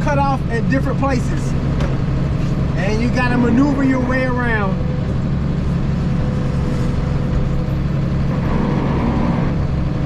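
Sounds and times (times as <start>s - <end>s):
tractor engine running: 0.0s - 10.0s.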